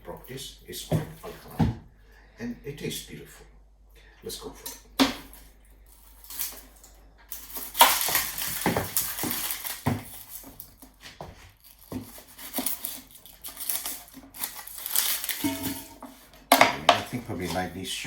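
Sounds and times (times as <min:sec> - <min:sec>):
metal utensils clattering: 0:12.4 - 0:17.8.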